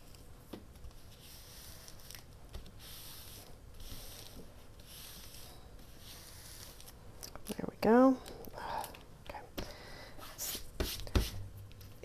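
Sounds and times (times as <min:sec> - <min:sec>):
paper swishing strokes: 0:02.8 - 0:06.9.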